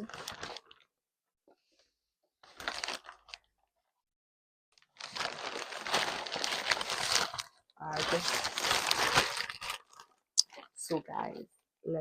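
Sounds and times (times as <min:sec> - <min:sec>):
packaging crinkling and tearing: 0:00.0 - 0:00.9, 0:02.4 - 0:03.5, 0:04.8 - 0:10.8.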